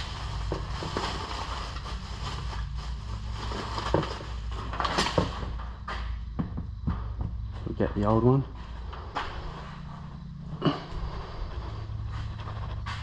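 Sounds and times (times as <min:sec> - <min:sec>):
rustling: 0:00.0 - 0:05.4
steady low hum: 0:00.0 - 0:13.0.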